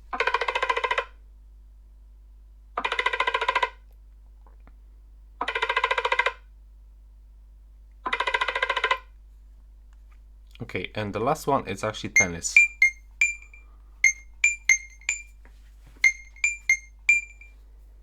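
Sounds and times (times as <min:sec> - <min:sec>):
phone ringtone trill: 0:12.2 - 0:15.3, 0:16.0 - 0:17.5.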